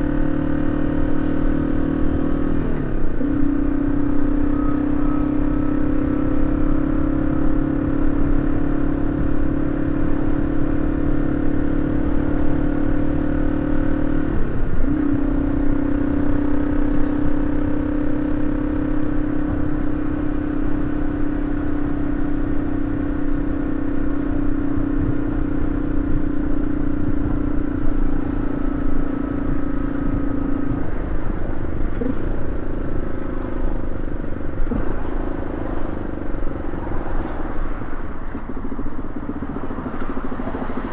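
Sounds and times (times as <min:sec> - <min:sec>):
motorcycle engine cruising: 0:00.0 - 0:40.9.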